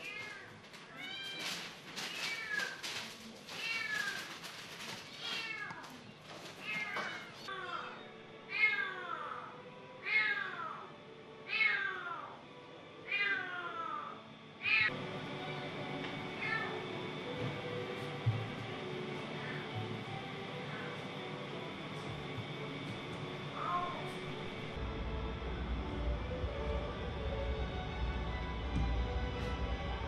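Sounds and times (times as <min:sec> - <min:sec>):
cats meowing: 0:00.0 - 0:10.9, 0:11.5 - 0:12.4, 0:13.1 - 0:14.9, 0:16.3 - 0:16.9, 0:19.3 - 0:19.8, 0:23.6 - 0:24.7.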